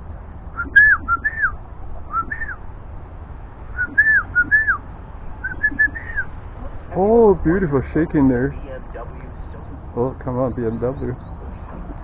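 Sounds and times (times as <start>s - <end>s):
whistled notes: 0.6s - 2.6s, 3.8s - 4.8s, 5.4s - 6.3s.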